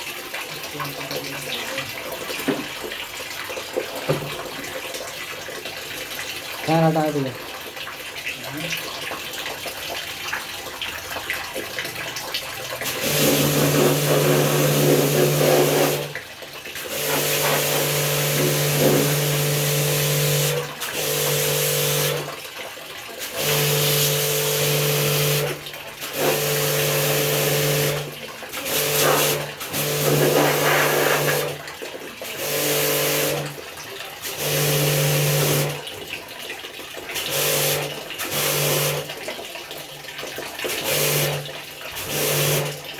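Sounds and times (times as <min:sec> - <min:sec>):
pressure washer pump humming: 0:11.5 - 0:36.1, 0:37.0 - 0:39.4, 0:40.6 - 0:42.9
water spray hissing: 0:12.9 - 0:16.1, 0:16.9 - 0:20.6, 0:28.6 - 0:31.6.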